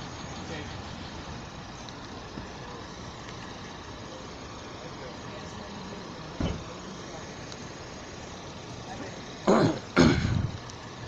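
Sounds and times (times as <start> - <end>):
faint voices: 0.0 - 10.9
street traffic noise: 0.0 - 11.0
brief thump: 6.4 - 6.7.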